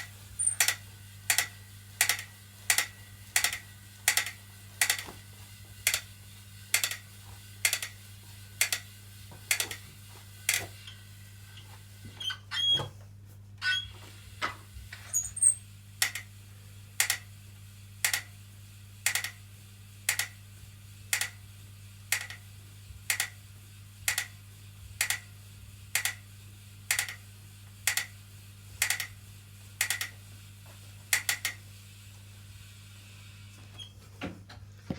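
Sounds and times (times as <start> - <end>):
spin bike pedal clicking: 0.4 - 5.2, 5.8 - 6.1, 6.8 - 7.0, 7.6 - 8.0, 8.6 - 9.8, 16.0 - 16.3, 17.0 - 17.2, 18.0 - 18.3, 19.1 - 19.4, 20.1 - 20.4, 22.1 - 22.4, 23.1 - 23.4, 24.1 - 24.3, 25.0 - 25.3, 26.0 - 26.2, 26.9 - 27.2, 28.8 - 29.1, 29.8 - 30.1, 31.1 - 31.6.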